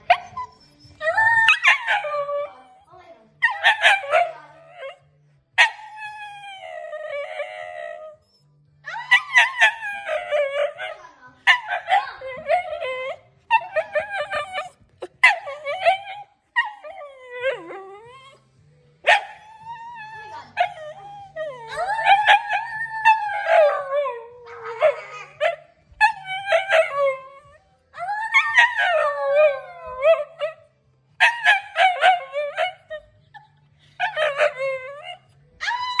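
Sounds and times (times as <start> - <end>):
dog whining and howling: 0.0 - 5.0, 5.7 - 10.9, 11.5 - 18.5, 19.1 - 36.0.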